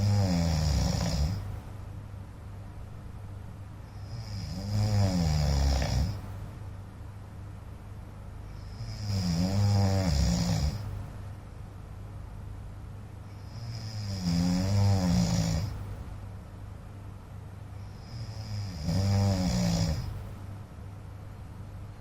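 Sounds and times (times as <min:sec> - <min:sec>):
man snoring loudly: 0:00.0 - 0:01.4, 0:04.0 - 0:06.2, 0:08.7 - 0:10.9, 0:13.4 - 0:15.8, 0:18.0 - 0:20.2.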